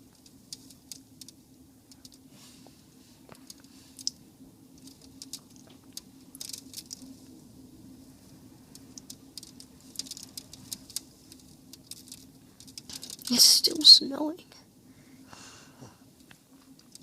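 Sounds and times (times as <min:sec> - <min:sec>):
faint small clicks and ticks: 0:00.0 - 0:07.4, 0:08.7 - 0:13.4, 0:16.2 - 0:17.0
steady low hum: 0:00.0 - 0:17.0.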